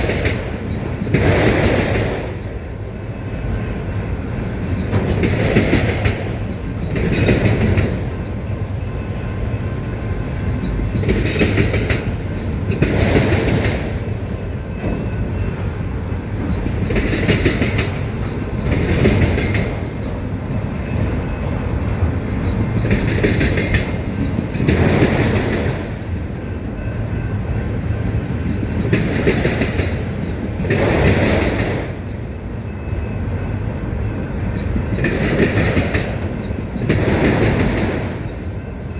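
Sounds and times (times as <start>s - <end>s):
freight train rumbling past: 0.0s - 38.9s
wheel clatter over rail joints: 4.4s - 8.6s, 10.3s - 15.7s, 16.3s - 32.2s, 34.1s - 38.7s.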